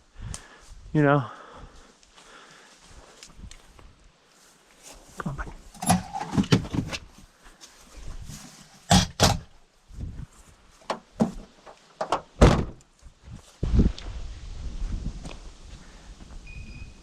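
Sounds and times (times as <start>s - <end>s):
footsteps through dry brush: 0.4s - 5.8s, 7.0s - 8.9s, 9.7s - 11.6s, 13.0s - 16.4s.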